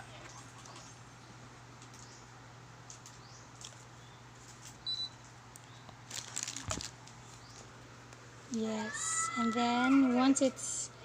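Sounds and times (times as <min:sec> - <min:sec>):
clicks and rustles: 0:02.8 - 0:08.2.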